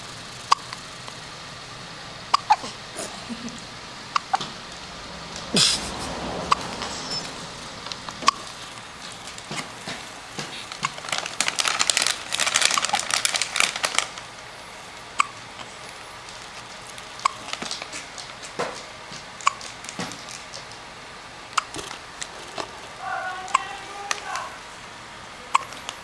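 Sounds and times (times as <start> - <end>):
person hiccuping: 2.3 - 4.4, 5.5 - 7.4, 21.6 - 24.4, 25.5 - 25.7
rustling: 4.3 - 14.4.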